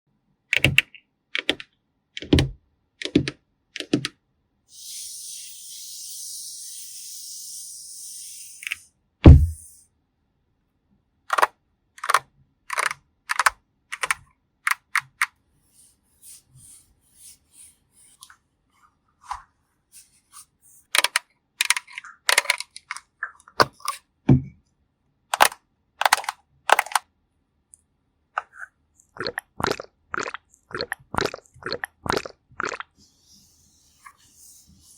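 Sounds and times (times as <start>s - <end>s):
heavy thump: 9.3s - 9.6s.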